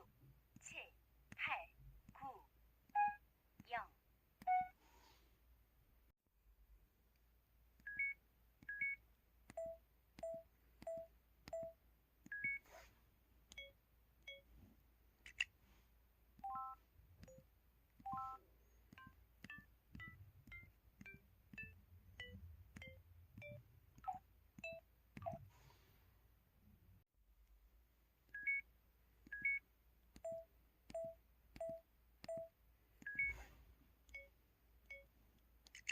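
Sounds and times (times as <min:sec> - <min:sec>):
phone keypad tone beeps: 0:04.4 - 0:04.7, 0:07.9 - 0:12.6, 0:18.1 - 0:18.4, 0:33.1 - 0:33.4.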